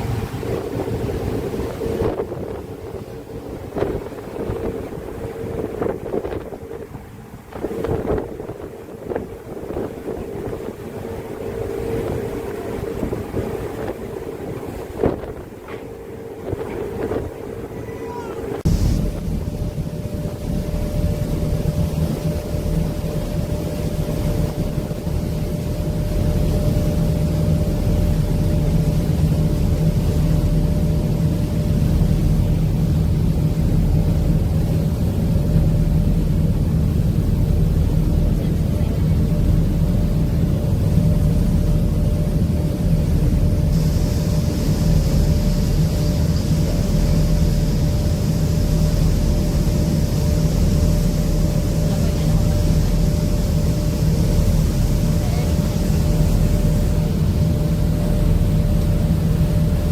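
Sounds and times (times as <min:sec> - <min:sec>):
ferry engines rumbling: 0:00.0 - 0:59.9
steady engine whine: 0:00.0 - 0:59.9
higher hiss: 0:43.7 - 0:57.4.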